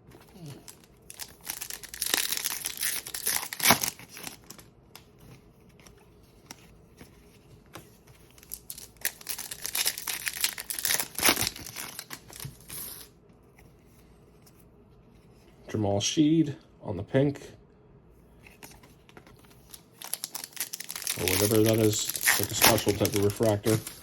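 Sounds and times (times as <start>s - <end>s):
foil wrapper crinkling and rustling: 0.1s - 4.7s, 8.2s - 13.1s, 18.6s - 24.0s.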